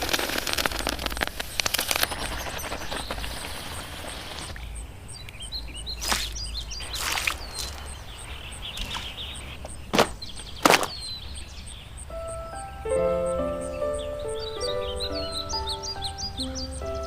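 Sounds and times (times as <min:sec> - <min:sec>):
sharp cracks or swishes: 0:00.0 - 0:04.6, 0:09.9 - 0:11.0
small birds chirping: 0:00.0 - 0:17.0
faint high ticking: 0:06.6 - 0:09.9, 0:11.0 - 0:17.0.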